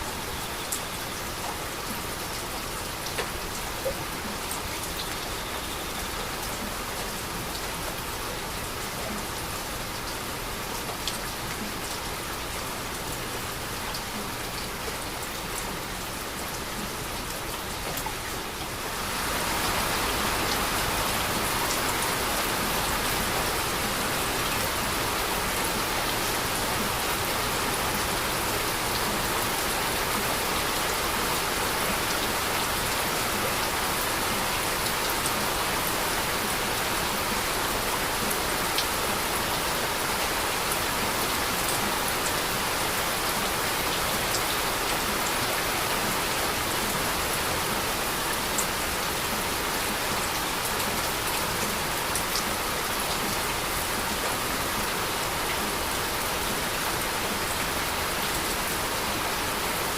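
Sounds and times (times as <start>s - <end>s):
heavy rain hissing: 18.3s - 59.9s.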